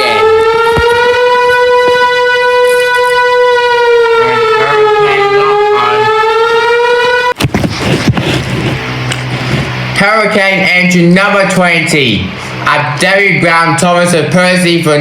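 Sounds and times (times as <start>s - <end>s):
loud siren-like wail: 0.0s - 8.4s.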